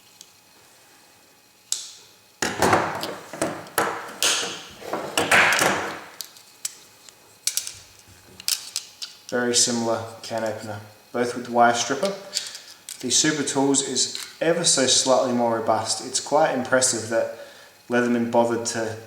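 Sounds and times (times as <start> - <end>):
folding tools clicking: 2.4 - 6.8
metal scraping and rubbing: 2.8 - 6.2.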